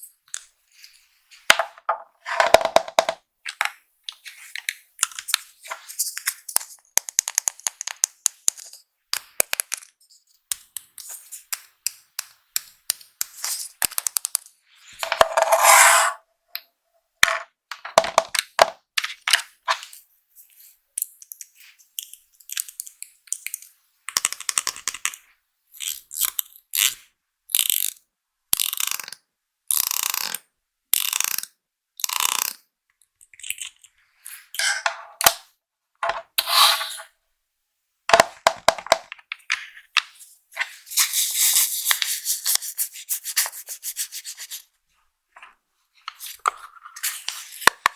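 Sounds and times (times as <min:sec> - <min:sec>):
plastic items clicking and tapping: 0:01.5 - 0:05.4, 0:06.1 - 0:15.4, 0:17.2 - 0:19.5, 0:21.0 - 0:25.2, 0:38.1 - 0:40.2
scratchy scraping strokes: 0:15.0 - 0:16.2, 0:36.4 - 0:37.1, 0:40.6 - 0:44.6.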